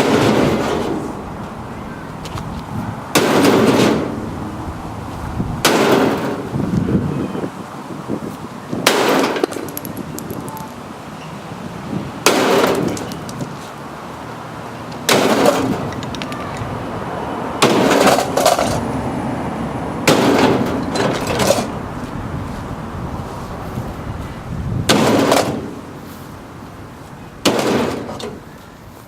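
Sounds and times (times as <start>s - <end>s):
heavy hammer blows: 0.0s - 6.8s.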